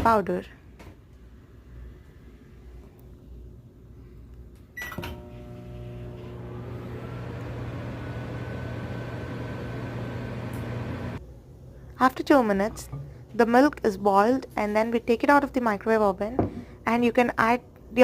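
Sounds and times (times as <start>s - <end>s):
microwave beep: 4.8s - 11.2s
microwave click: 4.8s - 11.2s
microwave running hum: 4.8s - 11.2s.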